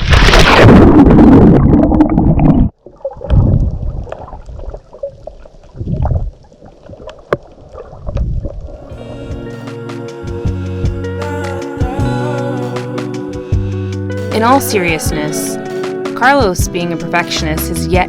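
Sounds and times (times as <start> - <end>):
rushing wind and water: 0.0 - 9.4.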